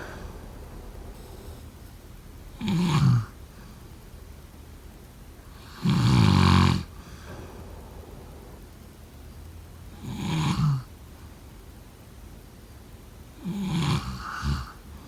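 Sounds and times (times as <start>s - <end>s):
loud snoring: 2.6s - 3.4s, 5.6s - 6.9s, 10.0s - 10.9s, 13.4s - 14.8s.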